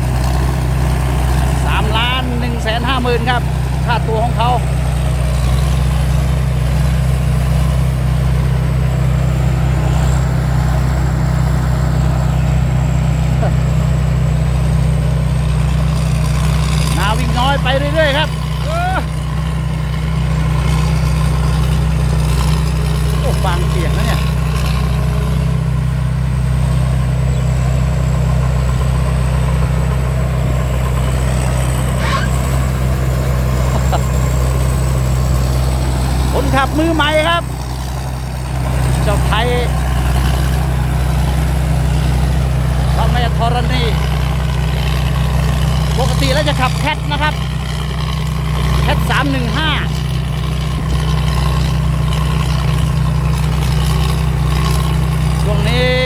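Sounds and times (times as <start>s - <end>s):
combine harvester diesel drone: 0.0s - 56.0s
high whine: 27.1s - 37.6s.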